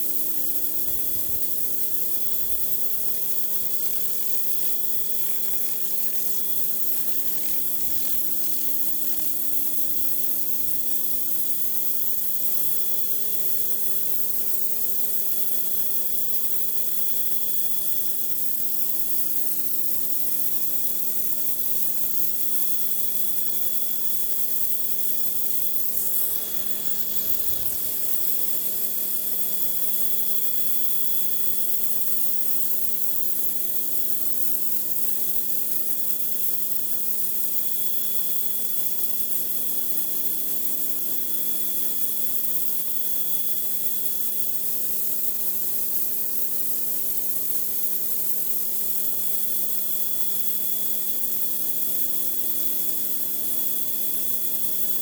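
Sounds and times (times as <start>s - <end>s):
water spray hissing on concrete: 0.5s - 11.6s, 24.7s - 32.1s
pressure washer hum: 25.7s - 29.5s.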